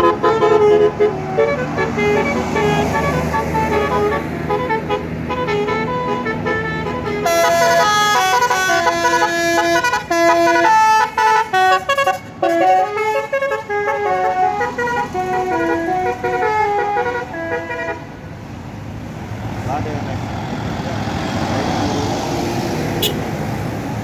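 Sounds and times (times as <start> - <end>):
bus musical horn melody: 0.0 - 18.3, 23.0 - 23.3.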